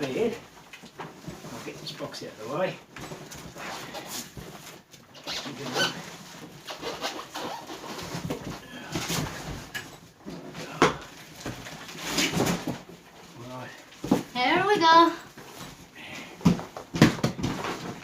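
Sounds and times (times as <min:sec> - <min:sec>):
cardboard rustling: 0:00.0 - 0:18.0
knocks on cardboard box: 0:16.4 - 0:17.7.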